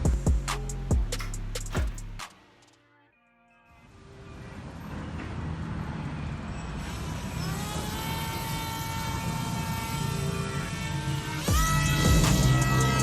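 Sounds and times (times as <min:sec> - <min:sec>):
electric motor whine: 0:06.7 - 0:13.0.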